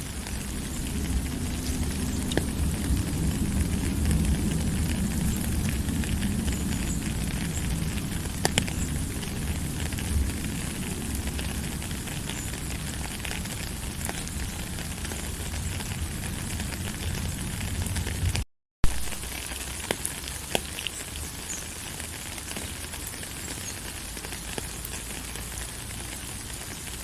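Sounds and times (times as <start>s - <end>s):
low rumble: 0.0s - 19.3s
small crackles: 0.0s - 27.0s.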